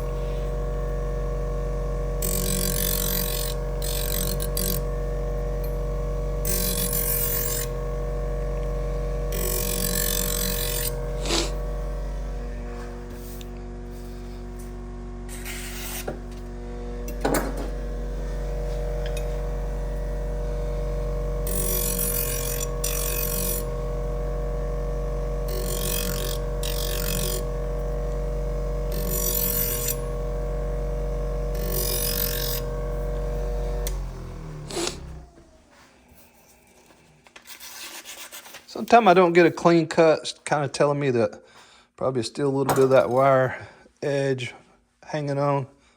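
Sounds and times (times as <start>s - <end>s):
buffer motor humming: 0.0s - 35.7s
knife edge scraping on buffer wheel: 2.2s - 5.8s, 6.4s - 7.9s, 8.6s - 11.7s, 15.3s - 16.3s, 21.4s - 23.8s, 25.3s - 28.0s, 28.7s - 30.3s, 31.4s - 34.0s, 34.7s - 35.2s, 37.4s - 38.6s.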